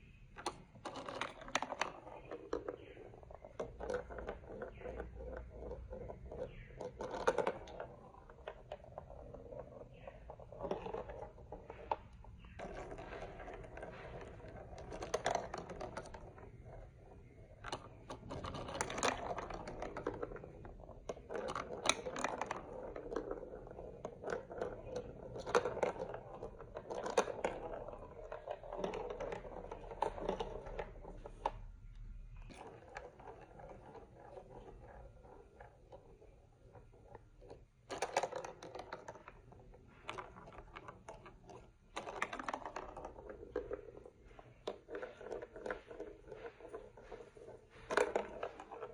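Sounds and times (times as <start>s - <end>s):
plastic pieces clicking and clacking: 12.6s - 31.7s, 32.5s - 46.1s.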